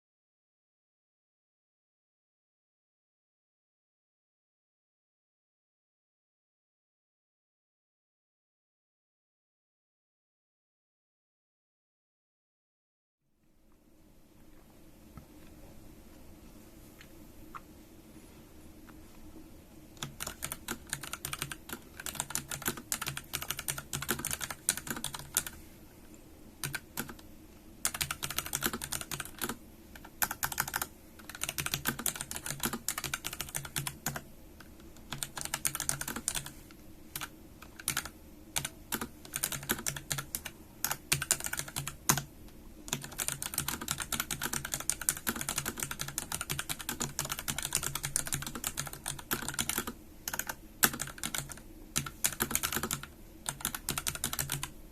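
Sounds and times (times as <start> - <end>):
mechanical keyboard typing: 20.0 - 25.6, 26.6 - 27.2, 27.8 - 34.2, 35.0 - 36.5, 37.2 - 42.3, 42.9 - 54.7.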